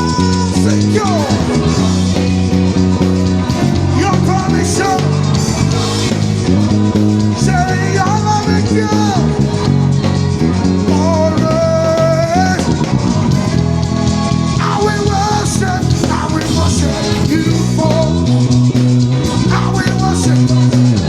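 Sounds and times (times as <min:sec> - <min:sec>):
electric bass low notes: 0:00.0 - 0:21.0
gospel band playing: 0:00.0 - 0:21.0
voices singing: 0:00.0 - 0:21.0.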